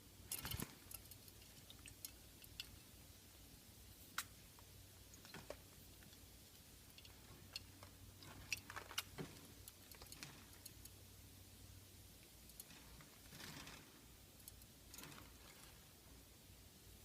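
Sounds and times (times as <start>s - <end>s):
low steady hum: 0.0s - 17.0s
birds clicking and tapping: 0.2s - 3.0s, 5.1s - 11.0s.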